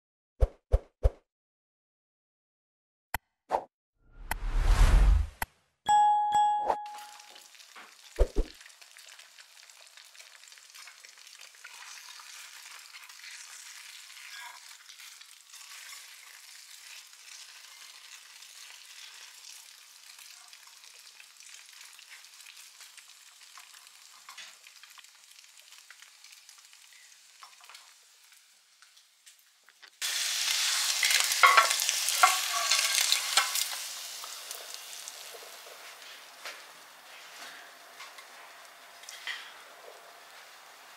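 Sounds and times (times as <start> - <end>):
short ringing chime: 5.9 - 7.4.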